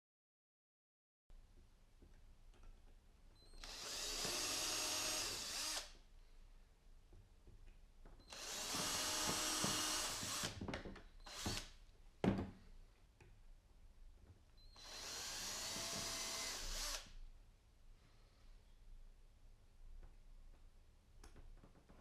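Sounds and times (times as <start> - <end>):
power drill running: 3.6 - 5.9, 8.3 - 10.6, 11.2 - 11.7, 14.8 - 17.1.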